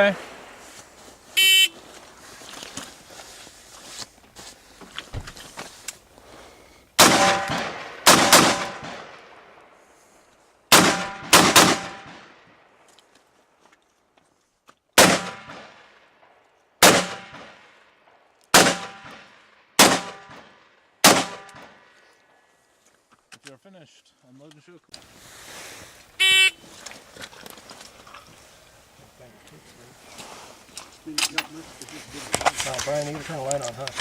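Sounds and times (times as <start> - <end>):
rifle shots with echo: 7.0 - 9.6, 10.7 - 12.4, 15.0 - 16.0, 16.8 - 17.8, 18.5 - 21.9.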